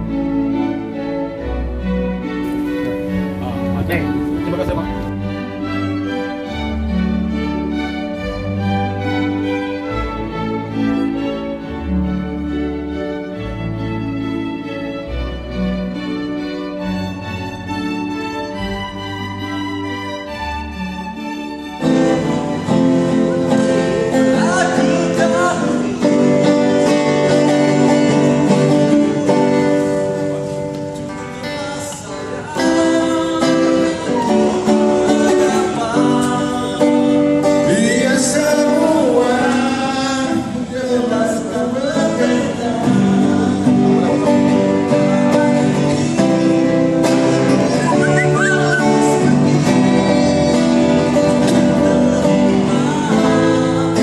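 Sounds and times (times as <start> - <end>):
man singing over guitar: 22.9 - 54.0.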